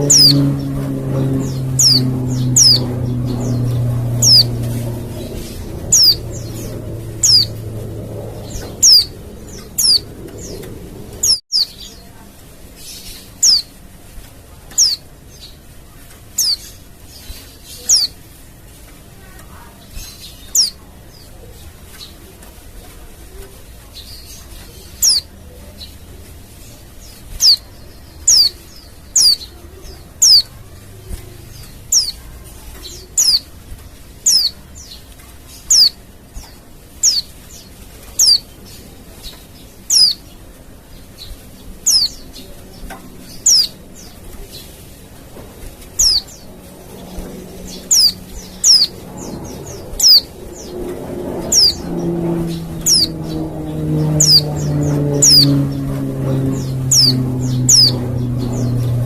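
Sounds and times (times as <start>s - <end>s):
low droning hum: 0.0s - 12.2s, 25.0s - 59.0s.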